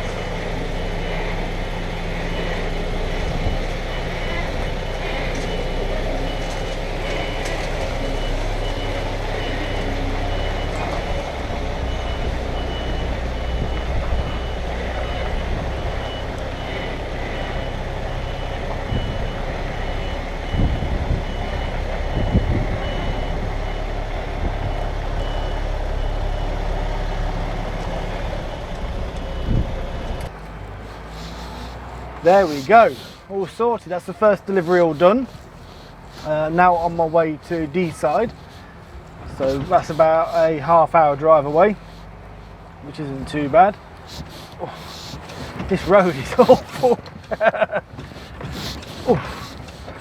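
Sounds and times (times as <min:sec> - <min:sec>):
reversing alarm beeping: 0:00.0 - 0:33.4
heavy vehicle engine running: 0:00.0 - 0:50.0.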